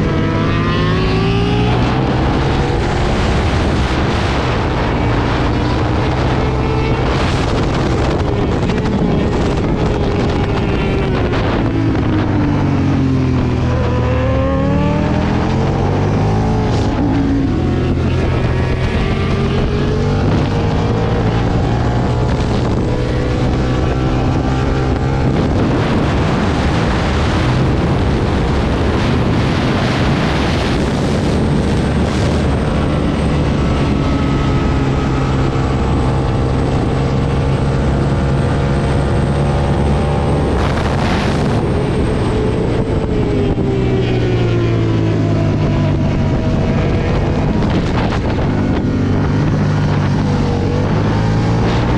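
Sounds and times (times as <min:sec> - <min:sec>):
motorcycle engine at speed: 0:00.0 - 0:51.9
wind rushing past: 0:00.0 - 0:51.9.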